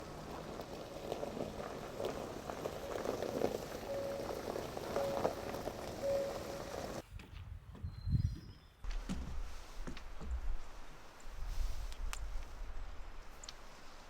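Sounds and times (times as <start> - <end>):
water boiling: 0.0 - 7.0.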